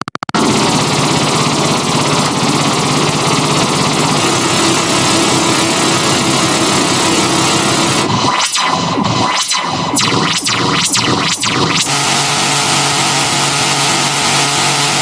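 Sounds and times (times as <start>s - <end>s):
dense synthesized notes: 4.1s - 12.6s.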